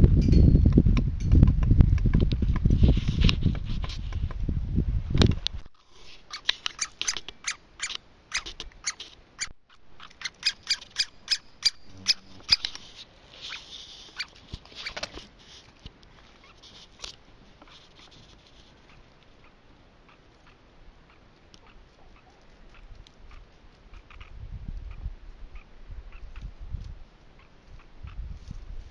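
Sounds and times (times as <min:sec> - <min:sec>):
woodpecker pecking on tree: 0:06.3 - 0:13.0.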